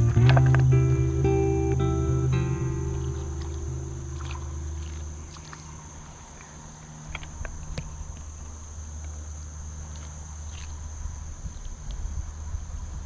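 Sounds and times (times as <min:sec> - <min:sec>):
low rumble: 0:00.0 - 0:06.1
insect chorus droning: 0:00.0 - 0:13.0.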